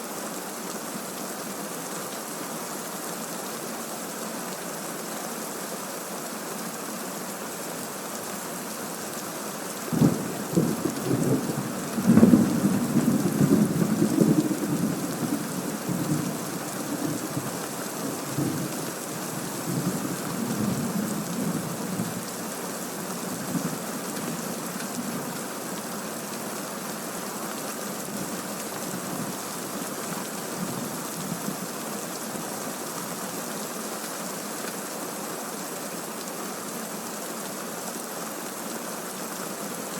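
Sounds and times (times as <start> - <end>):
heavy rain: 0.0 - 39.9
rolling rumble of thunder: 9.9 - 17.4.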